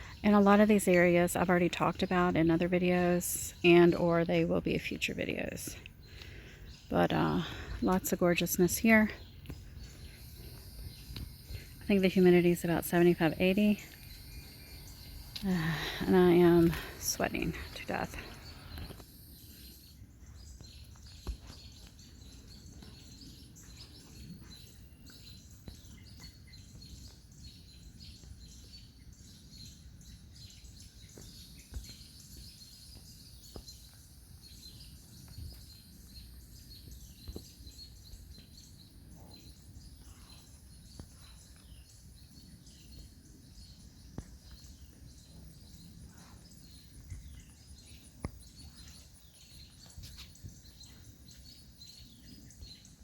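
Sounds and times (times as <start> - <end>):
songbirds chirping: 0.0 - 53.0
high-pitched hum: 9.5 - 20.0.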